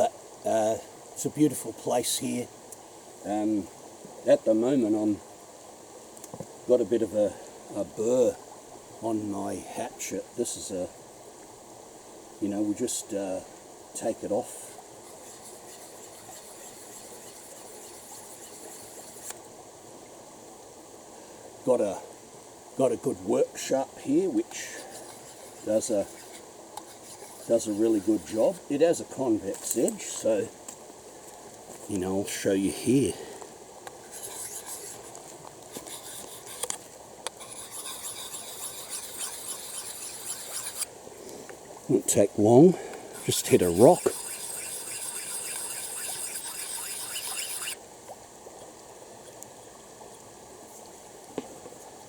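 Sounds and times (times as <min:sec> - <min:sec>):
creek rushing: 0:14.1 - 0:19.6, 0:23.1 - 0:51.2
blade scraping on sharpener: 0:15.1 - 0:19.4, 0:24.8 - 0:28.6, 0:34.1 - 0:35.1, 0:35.8 - 0:36.8, 0:37.4 - 0:40.9, 0:43.2 - 0:47.8
blade clicking on sharpener: 0:44.0 - 0:47.8.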